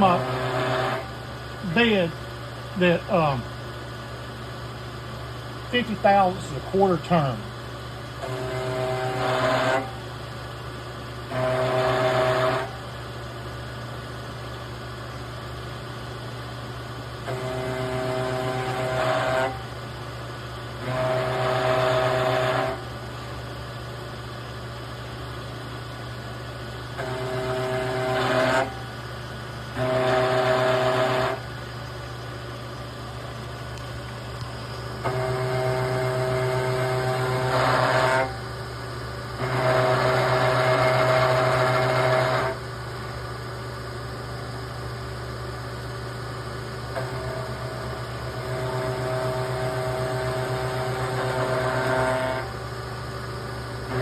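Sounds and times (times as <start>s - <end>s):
milling machine spindle running: 0.0s - 10.3s, 17.1s - 19.8s, 24.9s - 43.5s, 44.3s - 54.0s.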